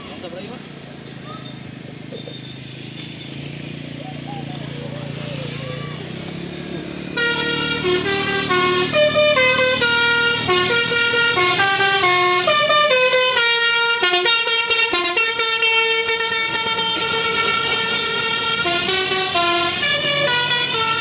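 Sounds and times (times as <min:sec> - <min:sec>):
musical air horn playing tune: 0:07.1 - 0:21.0.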